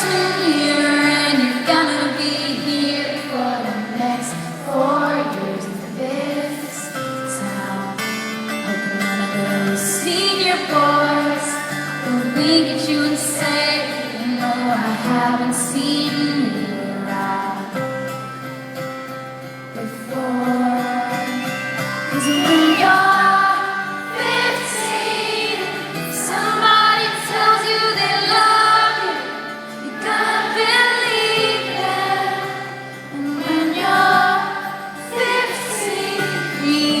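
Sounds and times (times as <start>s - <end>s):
woman singing: 0.0s - 18.1s, 19.8s - 37.0s
live band playing: 21.3s - 25.4s.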